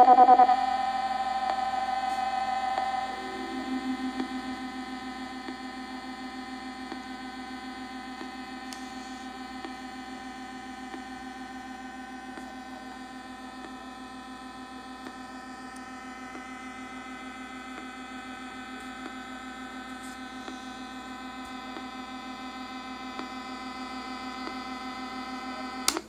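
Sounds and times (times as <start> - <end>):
synth drone: 0.0 - 11.7.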